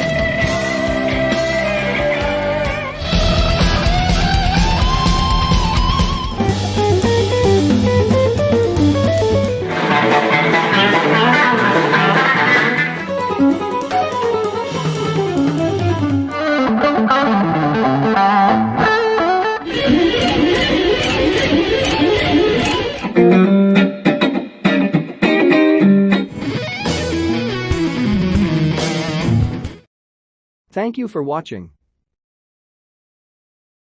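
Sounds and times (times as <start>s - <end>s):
electric guitar lead phrases: 0.0s - 29.8s
low bass: 0.2s - 9.6s.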